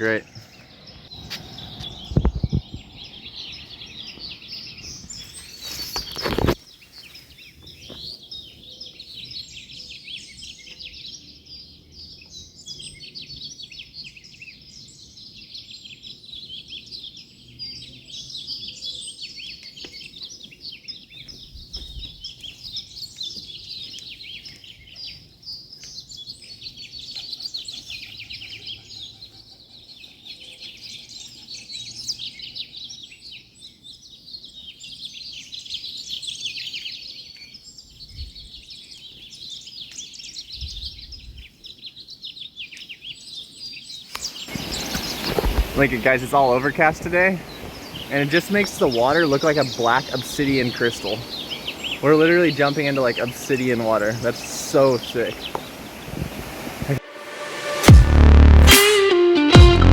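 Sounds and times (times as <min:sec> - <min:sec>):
birds singing and chirping: 0:00.0 - 0:58.0
loud rush of noise: 0:53.2 - 0:59.9.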